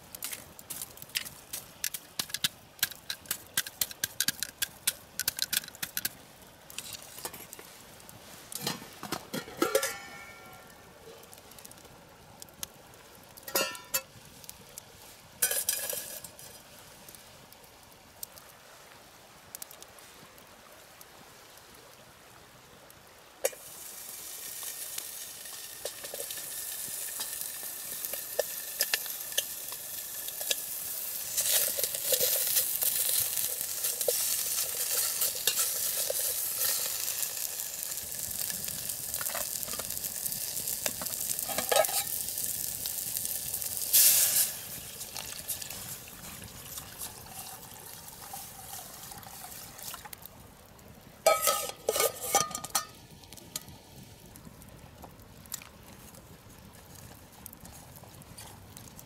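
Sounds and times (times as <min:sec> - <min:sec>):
ticks and pops: 0:01.1 - 0:06.2
food sizzling in a pan: 0:15.4 - 0:16.8, 0:23.4 - 0:50.2, 0:51.2 - 0:54.1.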